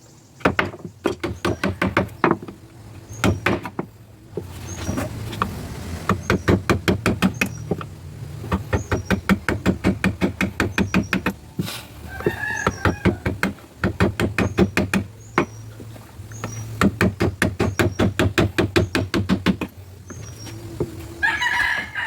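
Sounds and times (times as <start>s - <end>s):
mallet tapping a chisel into wood: 0.4s - 2.6s, 3.2s - 3.9s, 6.1s - 7.9s, 8.5s - 11.4s, 12.6s - 15.6s, 16.8s - 19.7s.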